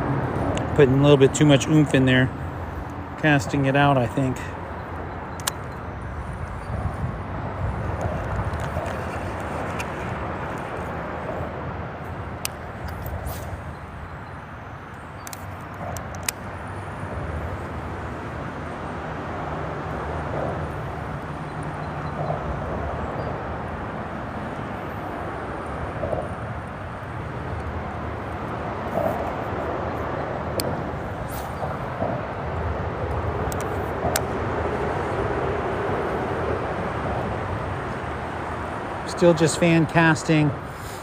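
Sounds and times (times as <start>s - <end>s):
freeway traffic rumble: 0.0s - 41.0s
small sharp clicks: 14.9s - 16.5s, 33.1s - 34.3s.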